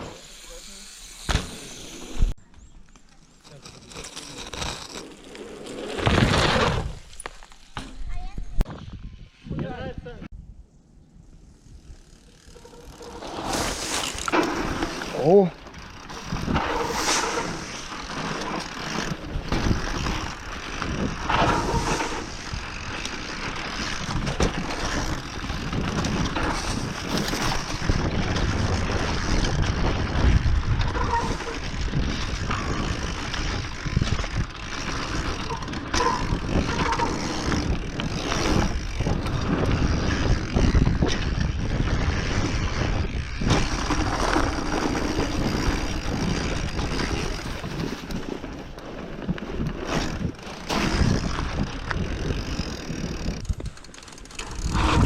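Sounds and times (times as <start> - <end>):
bike tyre rumble: 0.0 - 9.5, 10.3 - 55.0
wind noise on microphone: 8.0 - 12.0, 15.8 - 18.0, 18.8 - 23.0, 23.8 - 55.0
bike clattering over bumps: 12.0 - 55.0.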